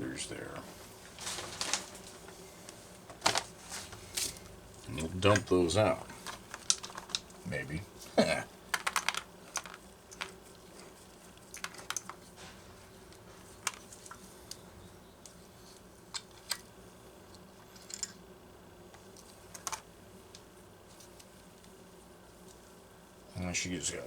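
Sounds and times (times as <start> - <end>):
faint steady hum: 0.0 - 24.0
metal parts clicking and tapping: 6.1 - 7.4, 8.7 - 10.4, 17.7 - 18.2.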